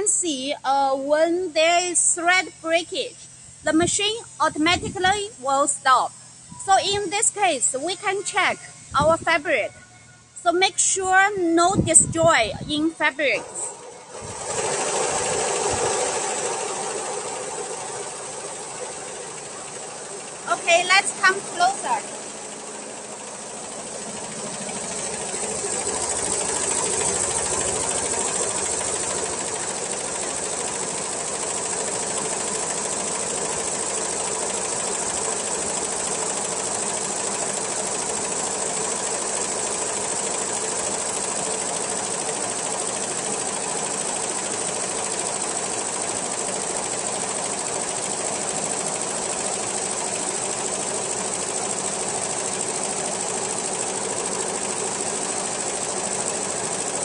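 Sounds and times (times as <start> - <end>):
embroidery machine stitching: 13.0 - 57.0.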